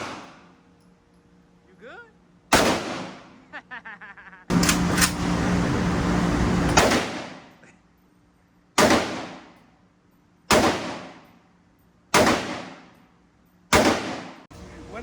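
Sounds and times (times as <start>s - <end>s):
rifle shots echoing: 0.0s - 0.5s, 2.5s - 3.4s, 6.7s - 7.5s, 8.8s - 9.6s, 10.5s - 11.2s, 12.1s - 12.9s, 13.7s - 14.5s.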